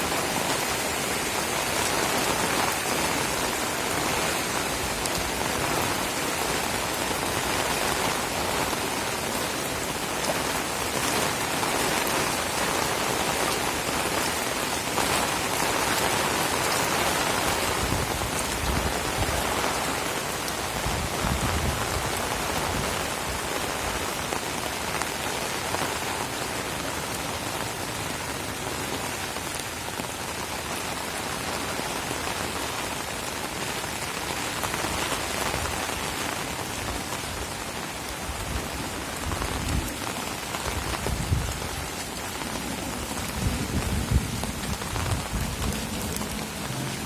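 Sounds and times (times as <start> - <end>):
heavy rain falling: 0.0 - 47.0.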